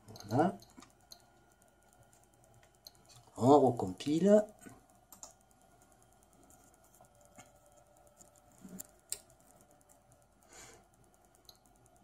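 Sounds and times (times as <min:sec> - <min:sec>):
faint steady hum: 0:00.0 - 0:12.0
computer keyboard clicks: 0:04.3 - 0:12.0.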